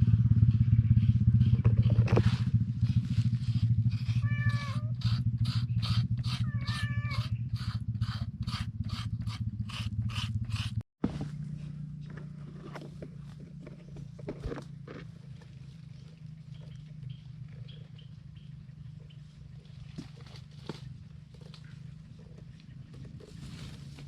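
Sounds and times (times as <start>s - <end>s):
steady low hum: 0.0s - 24.0s
cat meowing: 4.1s - 5.0s, 6.4s - 7.3s.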